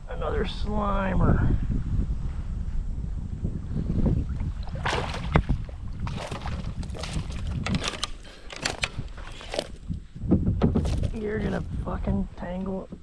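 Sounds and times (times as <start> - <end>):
fish splashing at surface: 4.6 - 8.0.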